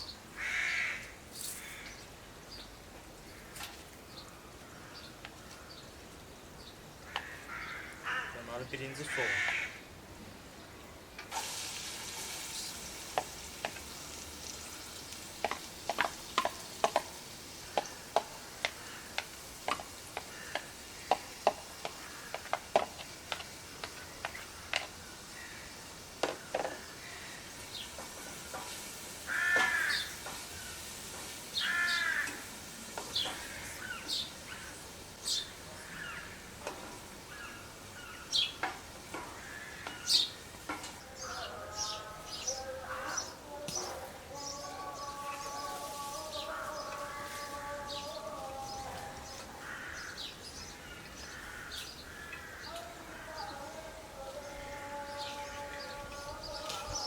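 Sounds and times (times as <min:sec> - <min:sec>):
crow cawing: 0:00.4 - 0:01.9, 0:03.3 - 0:05.7, 0:07.1 - 0:09.8, 0:17.6 - 0:19.2, 0:20.2 - 0:21.3, 0:21.9 - 0:22.6, 0:24.5 - 0:27.4, 0:29.3 - 0:30.2, 0:31.6 - 0:32.5, 0:39.3 - 0:40.2, 0:42.8 - 0:43.3, 0:49.5 - 0:50.2, 0:51.3 - 0:53.4
onion sizzling in butter: 0:11.3 - 0:35.4.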